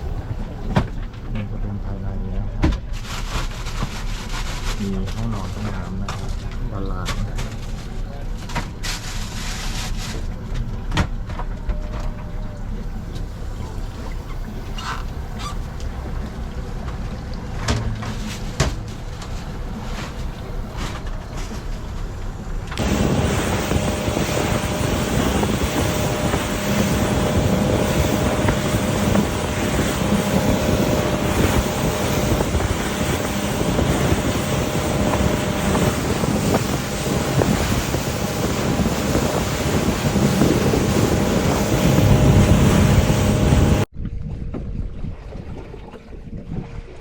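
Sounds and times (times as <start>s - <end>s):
rushing water: 0.0s - 1.0s, 2.9s - 43.9s
boat engine drone: 0.0s - 43.9s
wind buffeting microphone: 12.2s - 47.0s.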